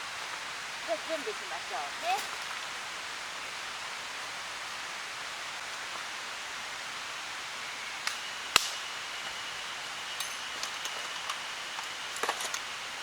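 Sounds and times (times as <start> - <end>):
steady outdoor hiss: 0.0 - 13.0.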